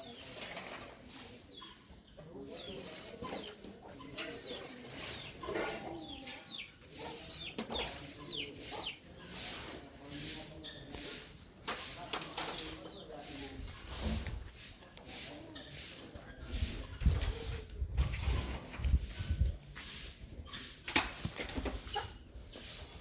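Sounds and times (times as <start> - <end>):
small birds chirping: 1.1 - 11.7, 12.4 - 14.2.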